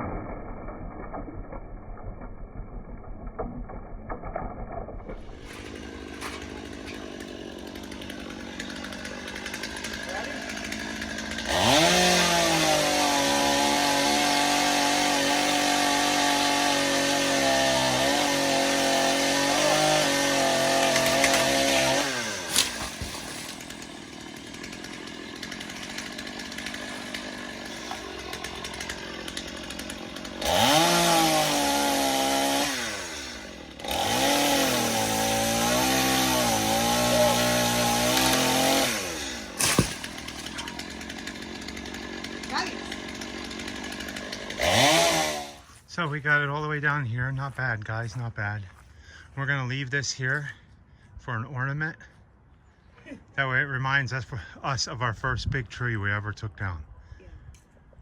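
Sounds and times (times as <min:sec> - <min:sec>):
chainsaw cutting wood: 0:03.0 - 0:45.9.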